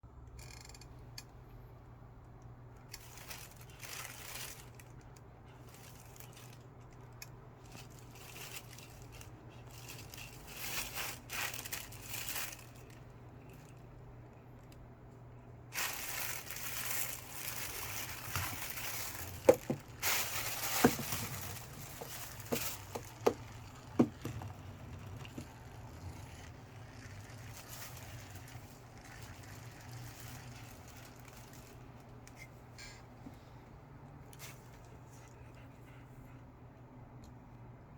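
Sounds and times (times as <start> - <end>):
plastic bag crinkling: 2.8 - 14.8, 15.7 - 32.6.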